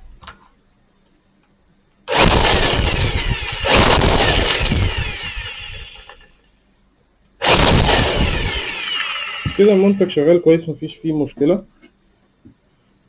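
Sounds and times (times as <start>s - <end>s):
dust blower motor with air rush: 2.1s - 6.3s, 7.4s - 10.1s.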